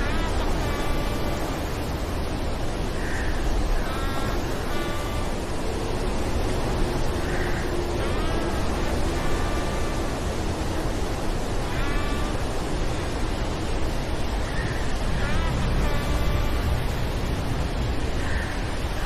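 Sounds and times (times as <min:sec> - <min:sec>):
storm rushing noise: 0:00.0 - 0:19.0.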